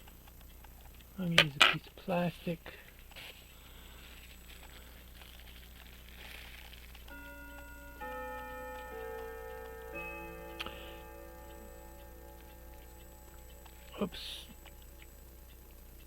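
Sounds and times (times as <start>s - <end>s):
clock chiming: 7.0s - 16.0s.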